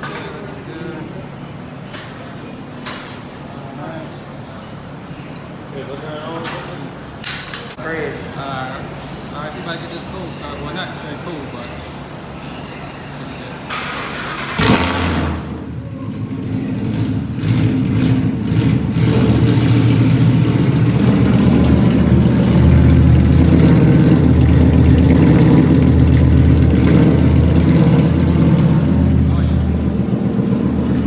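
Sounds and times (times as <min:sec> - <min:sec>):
car engine starting and idling: 0:13.6 - 0:31.0.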